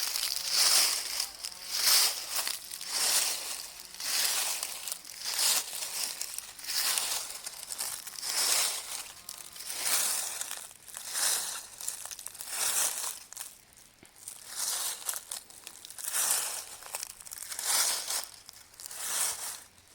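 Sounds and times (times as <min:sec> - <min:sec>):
footsteps crunching dry leaves: 0:00.0 - 0:19.9.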